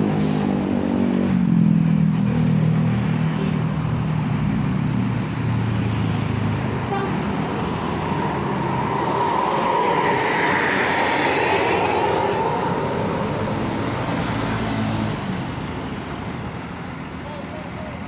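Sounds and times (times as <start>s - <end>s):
bus driving past: 0.0s - 17.0s.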